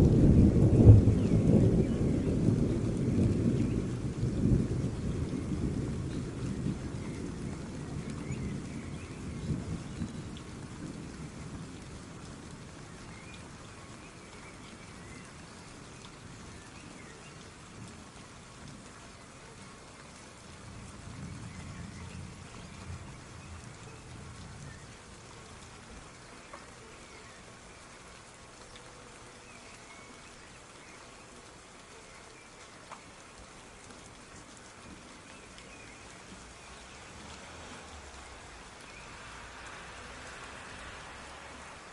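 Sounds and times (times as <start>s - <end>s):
thunder rumbling: 0.0s - 13.7s, 20.4s - 26.4s
steady rain: 0.0s - 41.9s.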